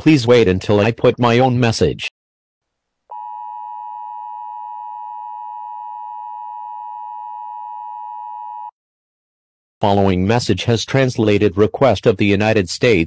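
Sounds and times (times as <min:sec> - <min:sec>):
electronic alarm tone: 0:03.1 - 0:08.8.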